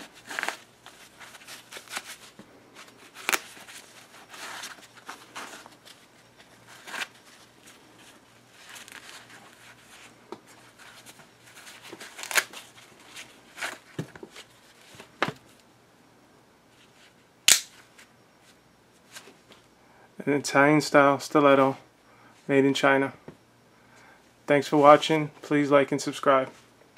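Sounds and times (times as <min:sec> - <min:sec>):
knife snapping sharply: 0:17.5 - 0:17.7.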